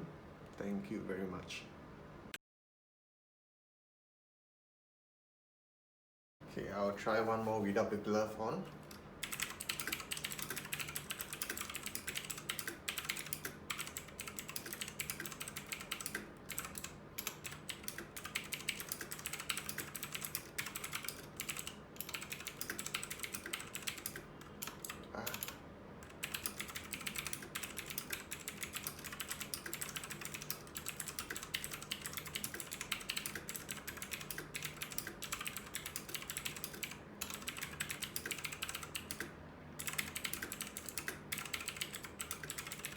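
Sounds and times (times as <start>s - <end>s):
clicky mechanical keyboard typing: 8.9s - 42.9s.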